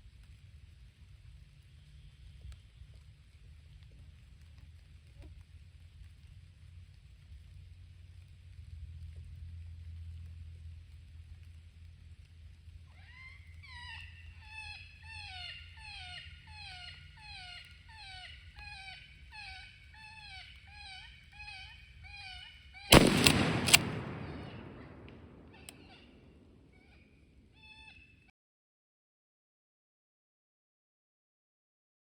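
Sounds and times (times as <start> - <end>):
shotgun shots: 22.9 - 25.9.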